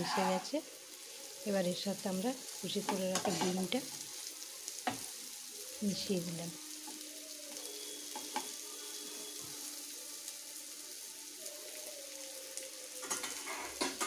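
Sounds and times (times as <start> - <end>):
spatula scraping a pan: 0.0 - 0.6, 3.1 - 3.6, 13.0 - 14.0
food sizzling in a pan: 0.0 - 14.0.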